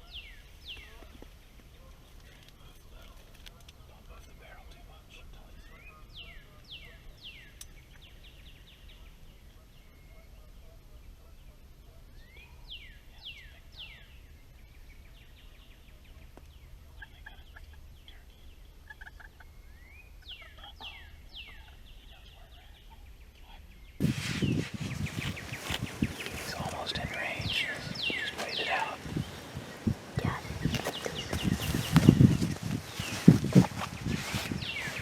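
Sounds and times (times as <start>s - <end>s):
loud rustling: 24.0s - 35.0s.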